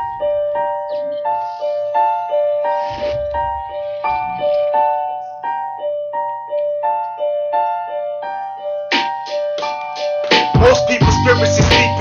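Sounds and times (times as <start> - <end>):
keyboard piano high notes: 0.0 - 12.0
drums: 10.3 - 12.0.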